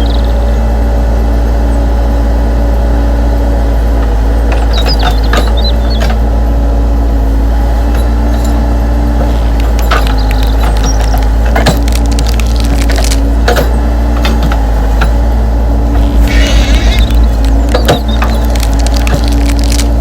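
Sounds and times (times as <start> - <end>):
model motors humming: 0.0 - 20.0
machine clicks and scrapes: 16.0 - 20.0.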